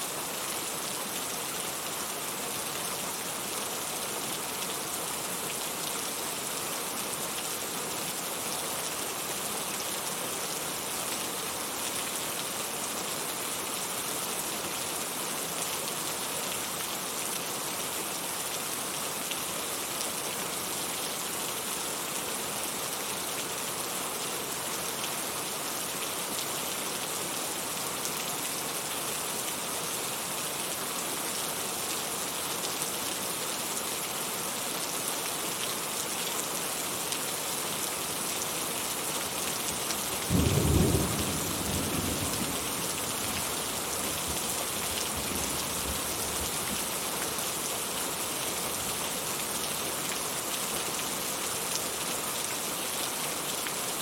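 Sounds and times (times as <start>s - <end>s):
heavy rain falling: 0.1s - 54.0s.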